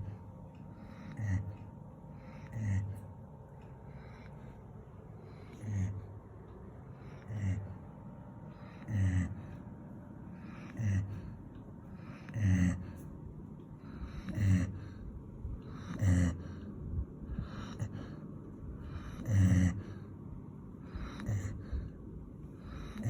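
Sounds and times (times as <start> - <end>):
dog snoring: 0.0 - 3.1, 5.2 - 6.1, 7.0 - 7.8, 8.5 - 9.6, 10.4 - 11.4, 12.0 - 13.1, 13.8 - 15.0, 15.6 - 16.7, 17.3 - 18.2, 18.8 - 20.1, 20.8 - 21.9, 22.6 - 23.0.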